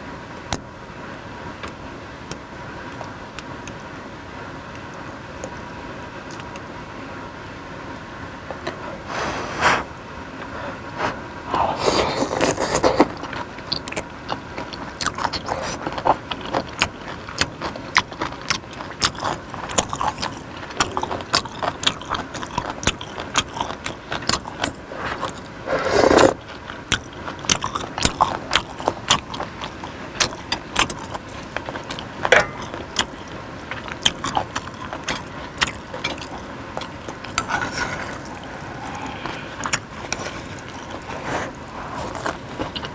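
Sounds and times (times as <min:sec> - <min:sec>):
close chewing and crunching: 0:10.4 - 0:42.9
loud mouth sounds: 0:24.8 - 0:26.4, 0:37.4 - 0:41.5.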